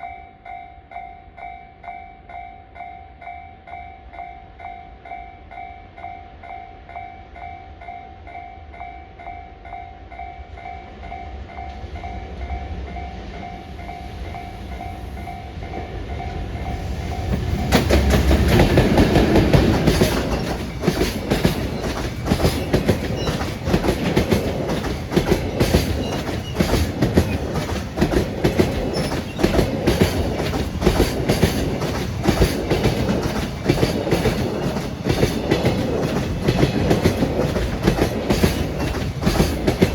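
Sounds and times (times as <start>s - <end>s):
freight train rumble: 9.5s - 39.9s
train wheels clacking over rail joints: 15.7s - 39.9s.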